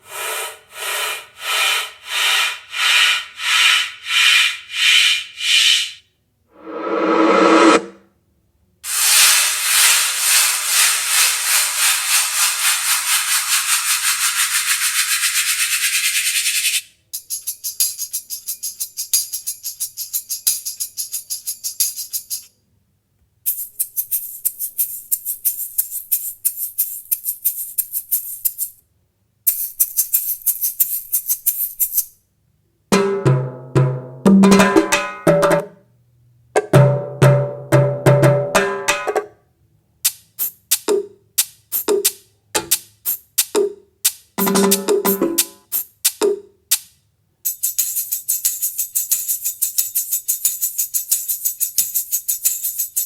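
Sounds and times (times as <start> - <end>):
fast shaker beats: 0.3 - 6.0, 8.8 - 22.5, 23.4 - 28.8, 29.4 - 32.2, 40.0 - 53.0
tambourine rattle: 8.9 - 22.5, 23.5 - 28.8, 29.5 - 32.2, 47.4 - 53.0
pitched drum hits: 33.0 - 35.6, 44.4 - 45.6.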